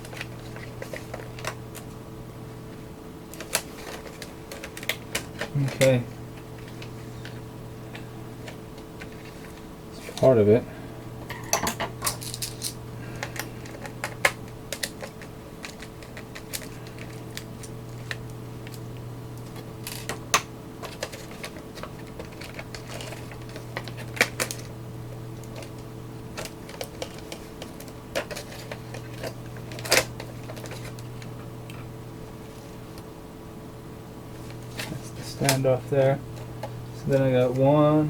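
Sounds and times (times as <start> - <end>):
steady low hum: 0.0 - 38.0
small metal parts handled: 11.3 - 18.8, 19.4 - 24.7, 26.4 - 31.0.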